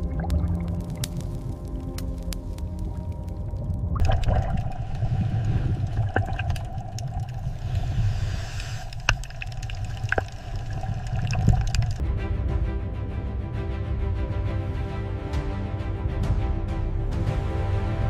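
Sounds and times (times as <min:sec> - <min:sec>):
sharp underwater clicks: 0:00.0 - 0:12.0
underwater low rumble: 0:00.0 - 0:12.0
water bubbling: 0:00.0 - 0:12.0.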